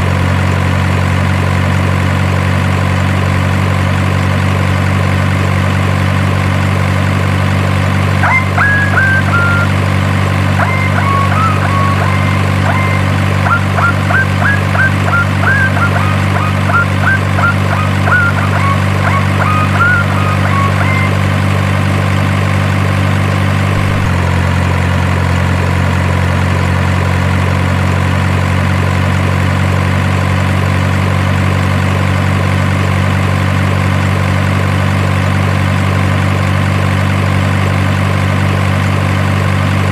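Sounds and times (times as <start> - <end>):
model truck engine idling: 0.0 - 39.9
short high chirps: 8.2 - 21.4.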